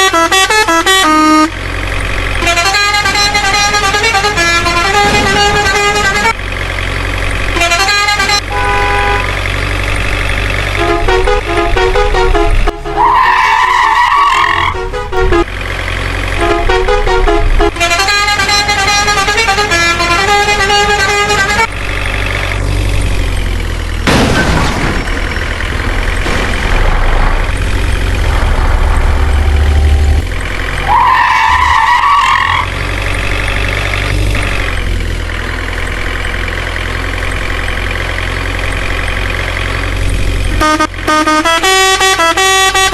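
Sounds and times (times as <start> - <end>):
truck horn blast: 0.0 - 1.6, 2.3 - 6.4, 7.4 - 9.4, 10.6 - 15.6, 16.2 - 21.8, 40.5 - 42.9
truck engine rumbling: 0.0 - 42.9.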